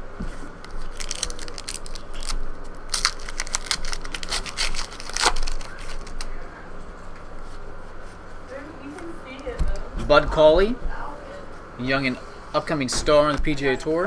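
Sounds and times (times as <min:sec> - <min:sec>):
card pack wrappers crinkling: 0:00.5 - 0:06.4.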